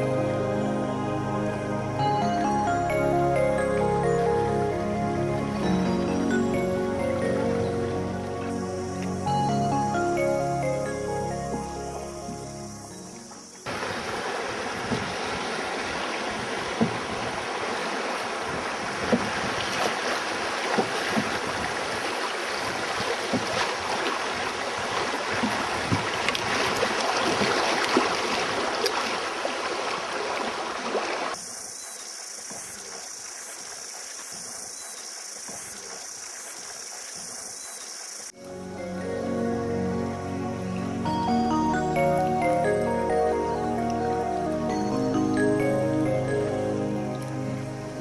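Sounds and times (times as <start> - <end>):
rushing river water: 0.0 - 48.0
knocks and splashes: 13.7 - 31.4, 32.4 - 37.6.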